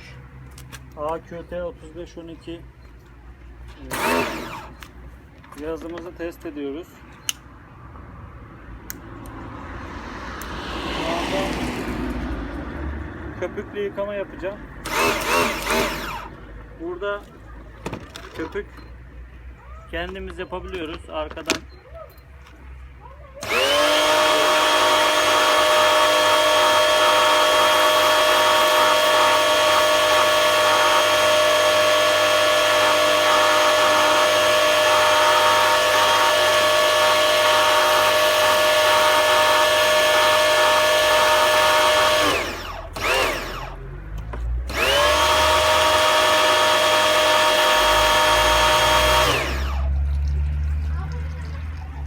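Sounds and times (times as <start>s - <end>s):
pressure washer motor whining: 3.8s - 5.0s, 14.4s - 16.5s, 23.4s - 50.6s.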